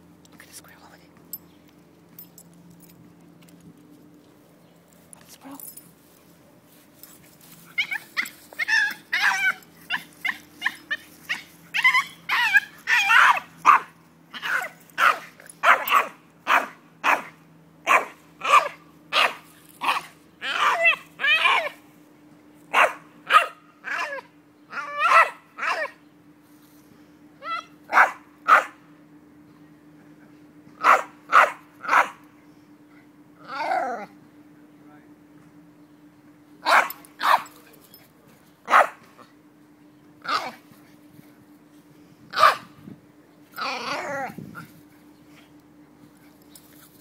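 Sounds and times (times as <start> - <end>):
faint steady hum: 0.0 - 47.0
dog barking and whining: 7.7 - 21.8, 22.7 - 26.0, 27.4 - 28.8, 30.8 - 32.2, 33.4 - 34.2, 36.6 - 37.6, 38.7 - 39.0, 40.2 - 40.6, 42.3 - 42.8, 43.6 - 44.7.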